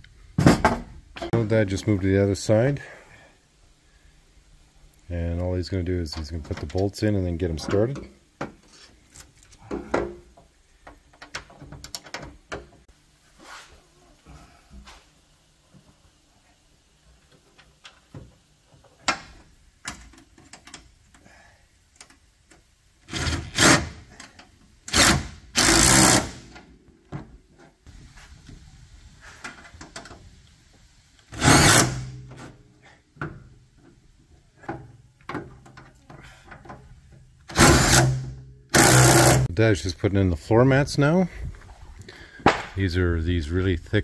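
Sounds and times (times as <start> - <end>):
power drill driving screws: 24.9 - 26.5, 31.3 - 32.1, 37.5 - 39.5.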